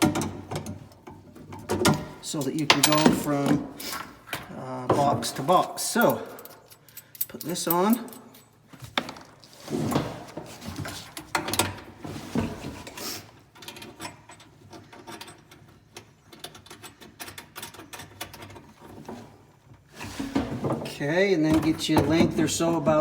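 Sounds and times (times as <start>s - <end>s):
metal conduit clicking and rattling: 0.0s - 3.6s, 5.3s - 8.6s, 13.5s - 18.9s.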